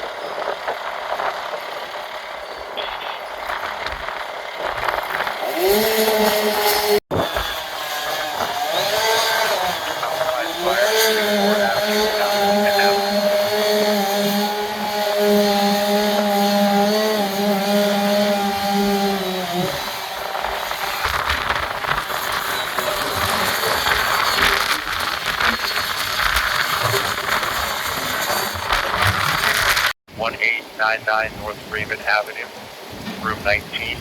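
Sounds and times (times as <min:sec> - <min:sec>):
rough noisy rush with crackles: 0:00.0 - 0:34.0
chainsaw running at high speed: 0:04.4 - 0:30.0.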